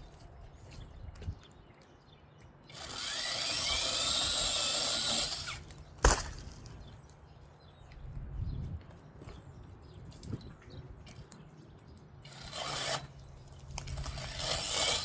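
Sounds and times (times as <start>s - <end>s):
chainsaw cutting branch: 2.8s - 6.8s, 12.3s - 13.2s, 13.8s - 15.0s.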